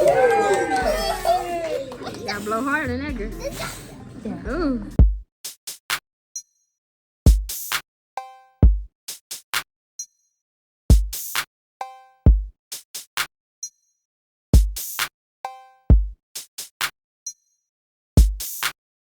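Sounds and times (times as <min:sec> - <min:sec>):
drum-machine beat: 0:00.0 - 0:03.7, 0:04.5 - 0:06.0, 0:07.3 - 0:07.8, 0:08.6 - 0:09.6, 0:10.9 - 0:11.5, 0:12.3 - 0:13.3, 0:14.6 - 0:15.1, 0:15.9 - 0:16.9, 0:18.2 - 0:18.8.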